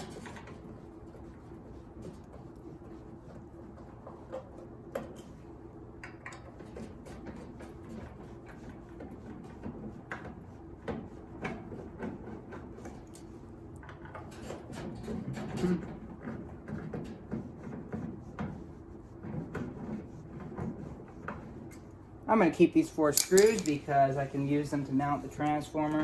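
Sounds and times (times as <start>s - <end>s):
light clicks and metallic taps: 23.2s - 23.8s.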